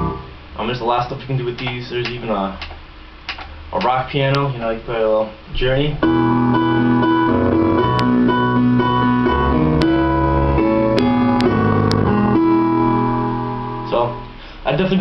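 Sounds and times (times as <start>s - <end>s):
piano playing held chords: 0.0s - 0.6s, 6.0s - 14.5s
sharp clicks: 1.6s - 4.4s.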